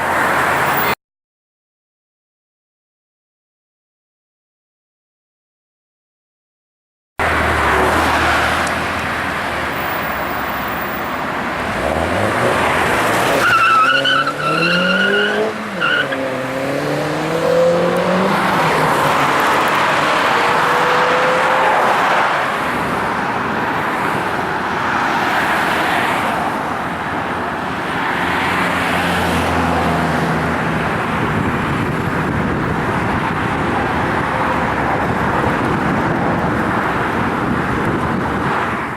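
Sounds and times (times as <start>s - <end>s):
car engine revving hard: 11.6s - 21.8s
tyres screeching: 11.7s - 16.7s.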